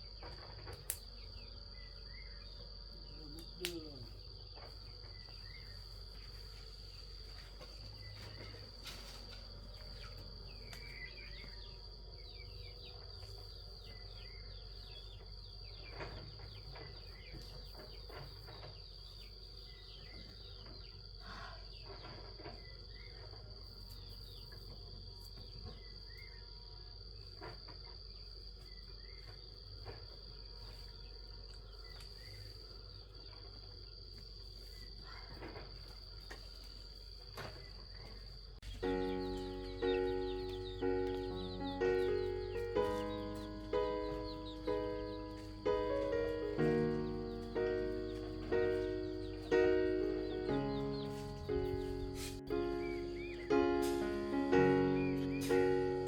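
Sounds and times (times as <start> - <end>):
faint chirps: 0.0 - 27.5, 34.5 - 56.0
crickets chirring: 0.0 - 56.0.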